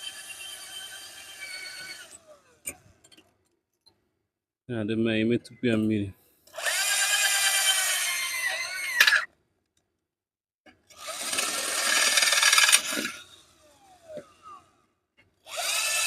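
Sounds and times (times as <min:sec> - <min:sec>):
electric drill boring metal: 0:00.0 - 0:02.8, 0:06.5 - 0:09.3, 0:10.9 - 0:14.8, 0:15.5 - 0:16.0.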